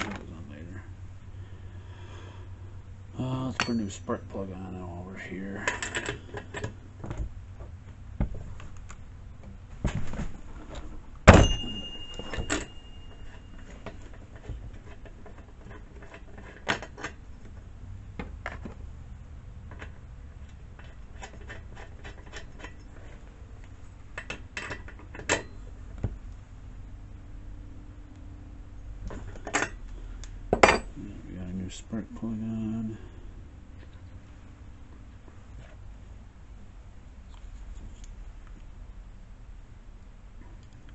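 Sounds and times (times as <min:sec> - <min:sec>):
metal tools clinking: 0:03.5 - 0:04.3, 0:11.3 - 0:14.2
loud metallic clank: 0:11.3 - 0:13.2.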